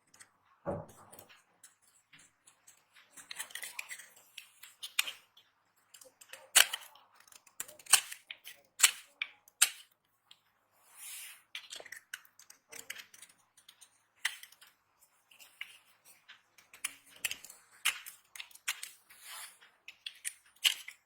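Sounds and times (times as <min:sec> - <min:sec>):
soap cracking under blade: 0:05.9 - 0:09.9.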